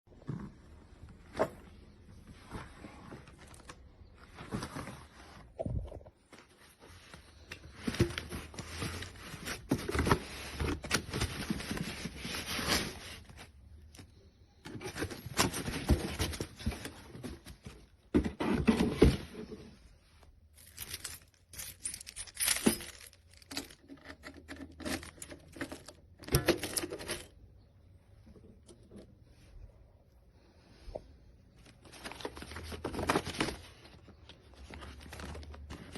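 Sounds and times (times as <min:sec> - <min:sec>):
rustling and scraping: 0:00.1 - 0:29.8.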